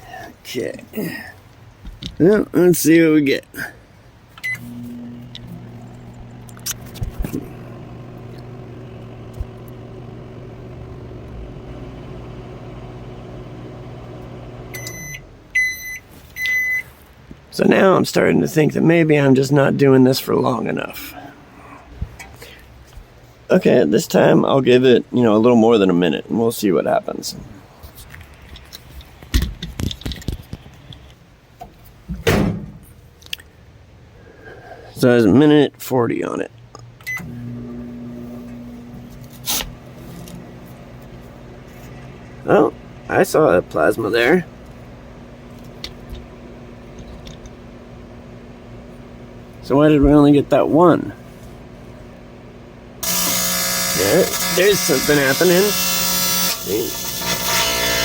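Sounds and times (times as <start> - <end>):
clicks: 4.4 - 12.5
microwave end beeps: 4.4 - 16.9, 37.1 - 37.9
microwave oven humming: 4.4 - 16.9, 37.1 - 58.0
microwave keypad beep: 14.7 - 16.9.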